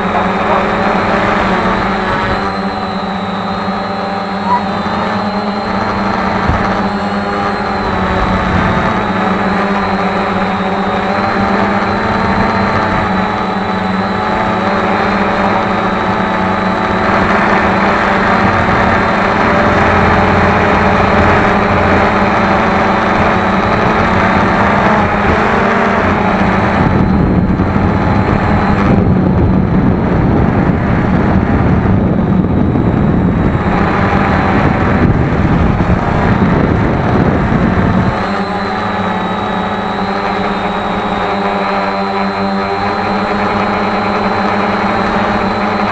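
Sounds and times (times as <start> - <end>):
drone propellers whining: 0.0 - 45.9
gusty wind rumbling: 15.5 - 41.6.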